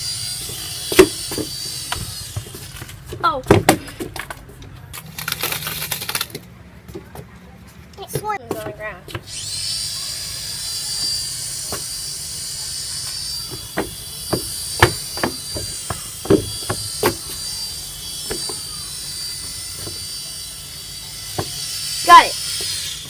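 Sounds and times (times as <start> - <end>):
toy helicopter motor whirring: 5.0 - 8.4.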